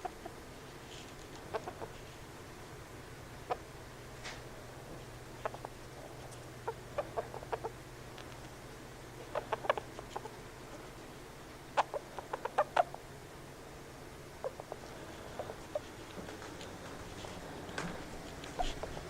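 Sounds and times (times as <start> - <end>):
hamster chirping: 1.3 - 2.0, 5.3 - 8.4, 9.2 - 10.4, 11.7 - 13.0, 18.4 - 19.0.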